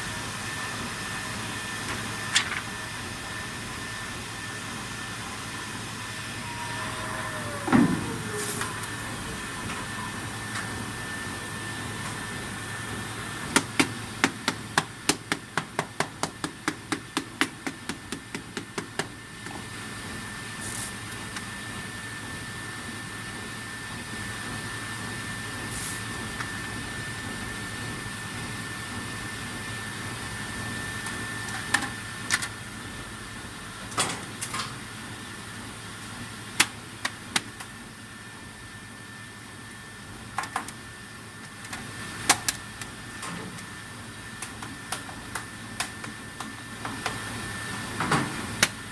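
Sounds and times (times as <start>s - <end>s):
drilling machine whine: 0.0s - 14.2s
low hum: 6.0s - 11.4s.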